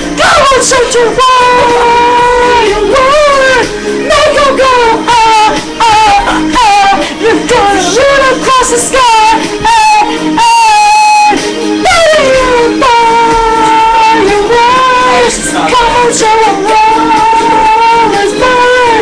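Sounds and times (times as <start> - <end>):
pop backing music: 0.0 - 19.0
high wavering singing voice: 0.2 - 19.0.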